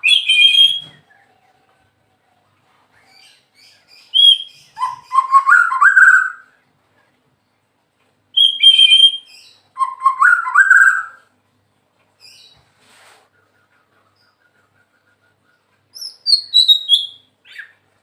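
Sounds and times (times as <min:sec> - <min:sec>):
bird singing whistled phrases: 0:00.0 - 0:01.0, 0:04.0 - 0:06.5, 0:08.4 - 0:11.3, 0:16.0 - 0:17.8.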